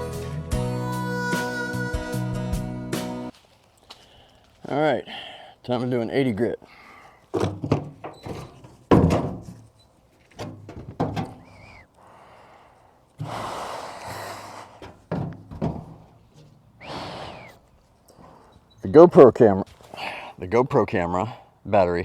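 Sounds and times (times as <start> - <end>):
knocks and thunks: 7.3 - 9.7, 10.4 - 11.5, 14.8 - 16.5.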